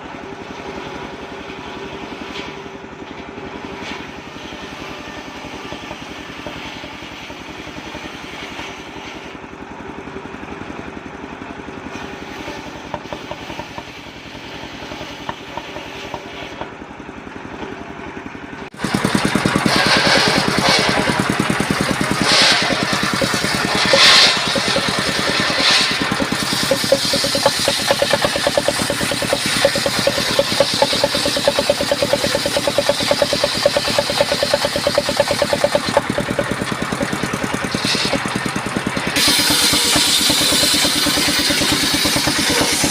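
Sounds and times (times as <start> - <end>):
small engine running sawmill: 0.0 - 42.9.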